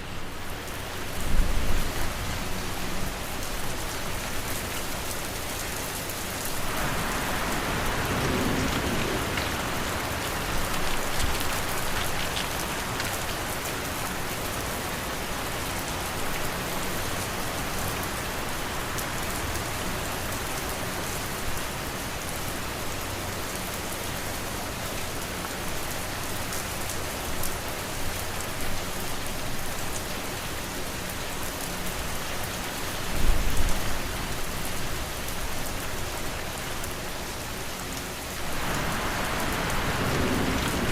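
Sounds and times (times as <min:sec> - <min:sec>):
rain hissing on a surface: 0:00.0 - 0:40.9
rain drop ticks: 0:08.6 - 0:13.9.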